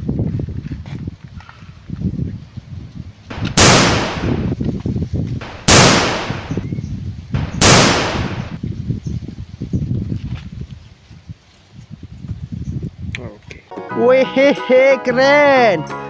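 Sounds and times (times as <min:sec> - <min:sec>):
gunshot bangs with hissing tail: 0:03.3 - 0:04.6, 0:05.4 - 0:06.7, 0:07.4 - 0:08.6.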